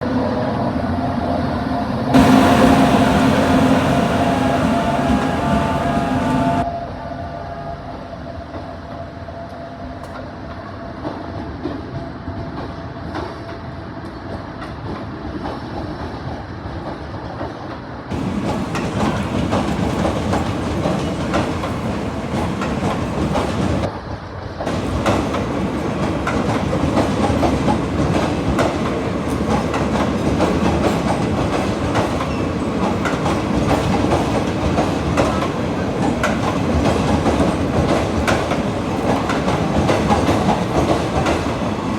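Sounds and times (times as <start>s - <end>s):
train running on track: 0.0s - 41.9s
wheels clicking over rail joints: 18.1s - 23.9s, 24.7s - 41.9s.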